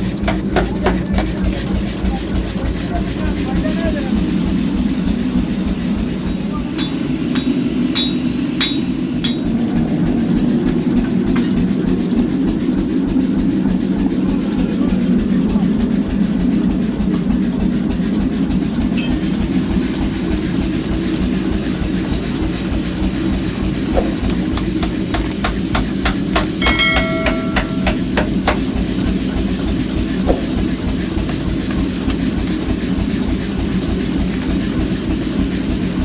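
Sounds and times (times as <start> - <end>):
machine humming and clattering: 0.0 - 36.0
metal knocks: 24.0 - 28.7.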